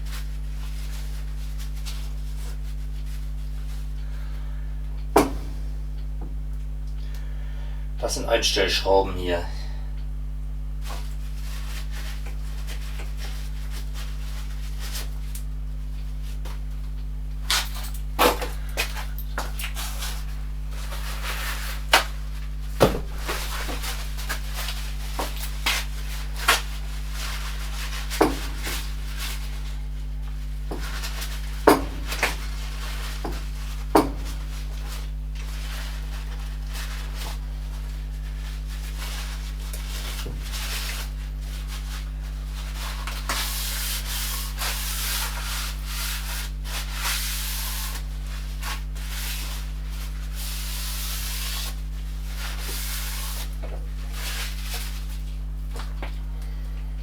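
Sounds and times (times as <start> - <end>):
steady low hum: 0.0 - 57.0
rubbing: 22.8 - 29.7.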